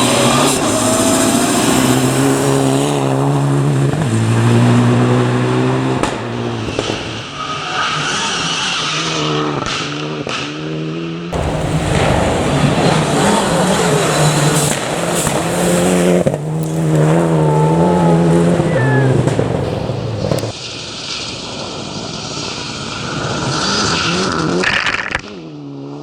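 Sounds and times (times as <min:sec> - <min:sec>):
rally car engines revving: 0:00.0 - 0:20.6.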